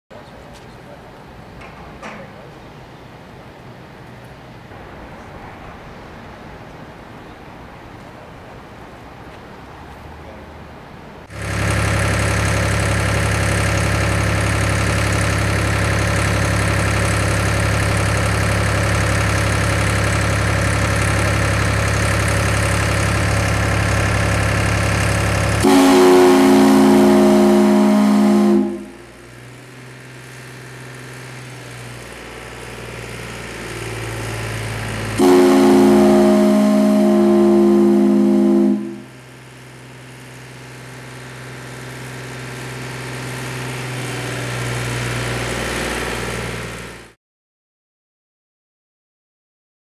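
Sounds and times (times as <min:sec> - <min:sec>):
steam whistle blasts: 0:25.6 - 0:29.1, 0:35.2 - 0:39.2.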